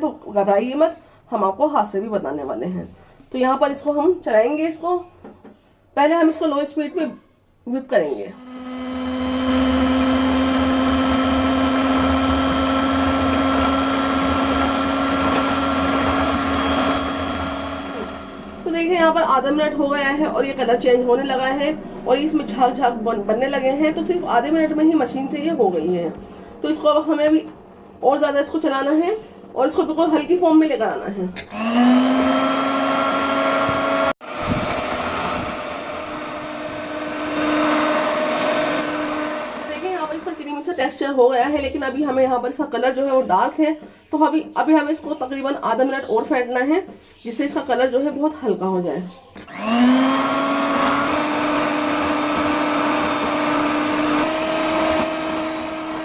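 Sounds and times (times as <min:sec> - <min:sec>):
electric hand beater humming: 0:08.4 - 0:18.8, 0:31.4 - 0:40.6, 0:49.5 - 0:56.0.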